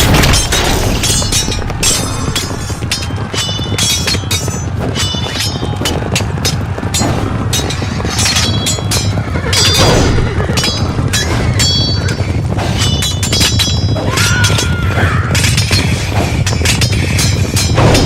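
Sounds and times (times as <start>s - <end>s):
low rumble: 0.0s - 18.0s.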